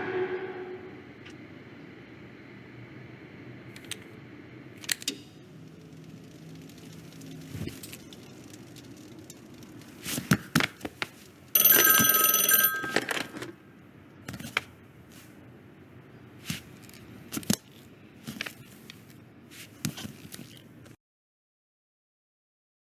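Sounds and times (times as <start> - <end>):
bell ringing: 11.6 - 13.4.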